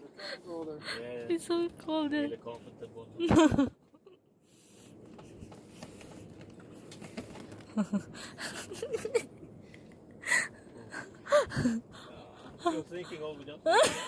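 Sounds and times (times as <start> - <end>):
faint background noise: 0.0 - 14.0.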